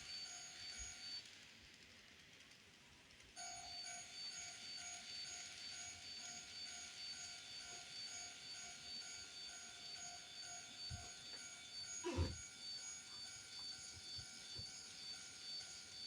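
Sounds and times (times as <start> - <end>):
level-crossing warning bell ringing: 3.4 - 11.8.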